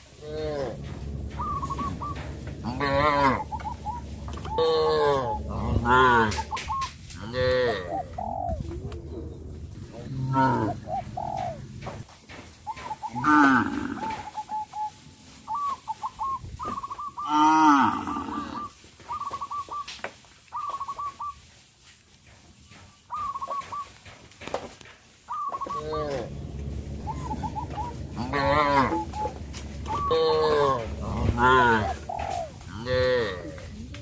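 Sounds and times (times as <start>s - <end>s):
bird calls: 0.0s - 21.5s, 22.6s - 24.2s, 25.2s - 34.0s
cattle mooing: 0.2s - 6.6s, 7.2s - 8.2s, 10.0s - 10.9s, 13.2s - 14.2s, 17.3s - 18.7s, 25.7s - 34.0s.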